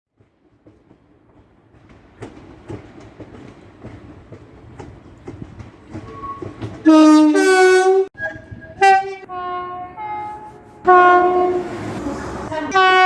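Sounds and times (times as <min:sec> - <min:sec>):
train wheels clacking on rails: 0:00.2 - 0:08.0
train rumbling: 0:00.2 - 0:13.0.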